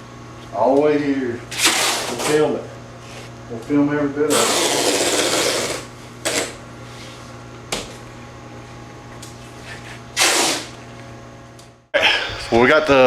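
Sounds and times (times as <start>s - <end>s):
steady low hum: 11.1s - 13.0s.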